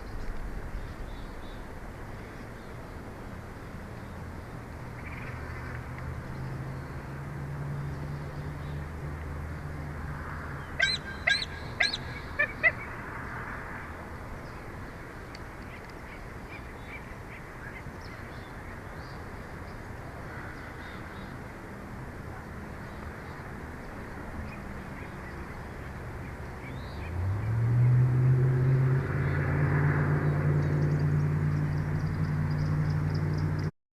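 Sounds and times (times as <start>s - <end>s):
low engine hum: 0.0s - 33.7s
short high bird calls: 10.8s - 12.9s.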